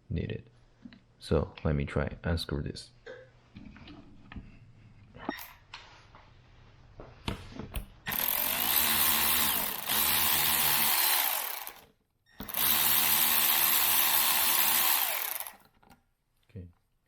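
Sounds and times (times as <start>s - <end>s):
power drill running: 8.1s - 15.7s.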